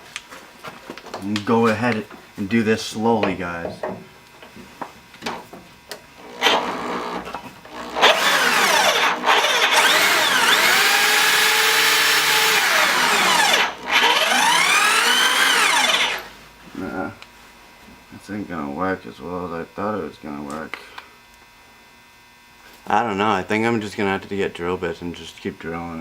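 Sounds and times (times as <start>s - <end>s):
power drill running: 6.2s - 16.3s.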